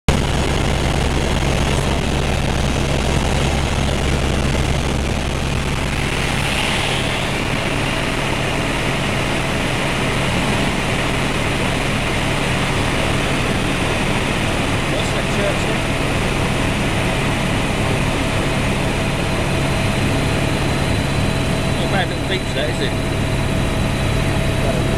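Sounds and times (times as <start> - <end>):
deep hum: 0.1 - 14.7
helicopter engine and rotor noise: 0.1 - 24.9.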